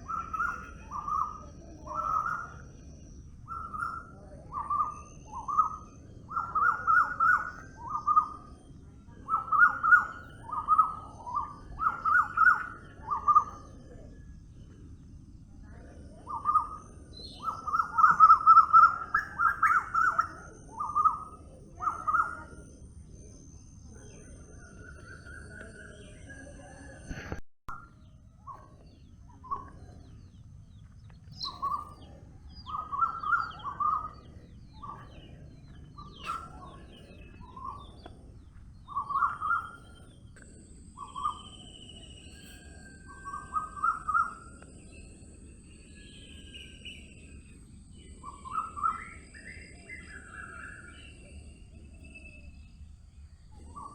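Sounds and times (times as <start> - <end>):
bird repeating clear phrases: 16.2 - 22.8.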